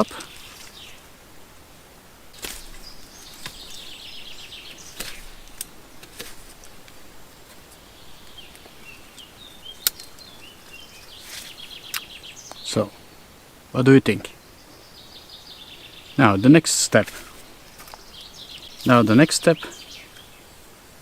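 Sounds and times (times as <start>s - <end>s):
faint bird chirps: 0.0s - 1.2s, 2.4s - 5.7s, 6.6s - 20.7s
knife blade shaving wood: 2.4s - 4.0s, 4.8s - 7.7s.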